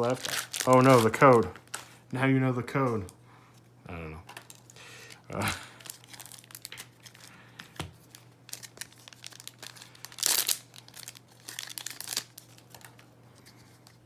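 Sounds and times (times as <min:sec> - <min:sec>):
wrapper tearing open: 0:00.0 - 0:02.0, 0:04.3 - 0:07.3, 0:08.0 - 0:13.0
foil wrapper crinkling: 0:00.0 - 0:02.1, 0:04.3 - 0:14.0.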